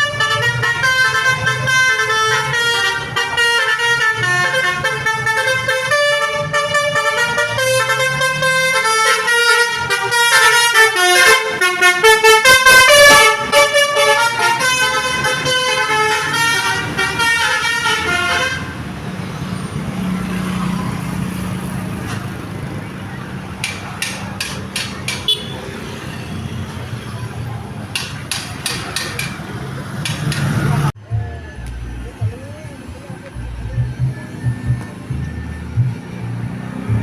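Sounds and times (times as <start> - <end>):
horn playing a melody: 0.0 - 18.7.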